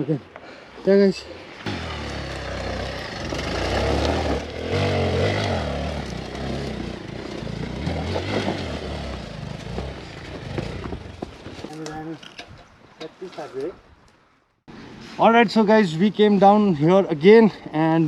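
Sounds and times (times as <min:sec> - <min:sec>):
dirt bike engine revving: 0:01.6 - 0:11.3.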